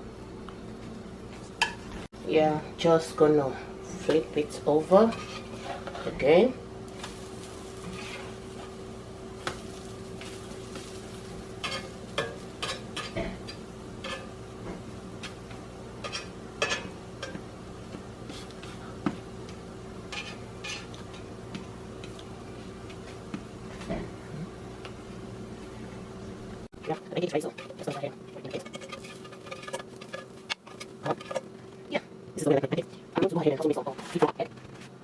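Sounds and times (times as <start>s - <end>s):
food sizzling: 4.2s - 33.4s
spatula scraping a frying pan: 5.0s - 6.2s, 7.0s - 8.8s, 9.5s - 14.3s, 20.1s - 21.3s, 26.8s - 31.5s.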